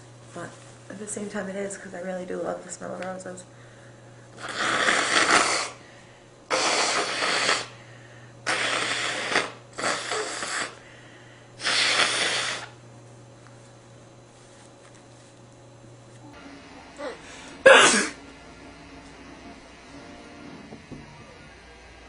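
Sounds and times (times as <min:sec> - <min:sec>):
loud breaths through nose: 0:03.6 - 0:12.8.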